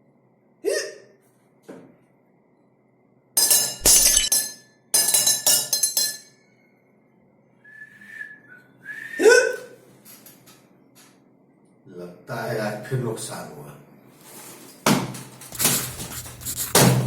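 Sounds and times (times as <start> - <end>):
glass clinking and breaking: 3.4 - 6.4.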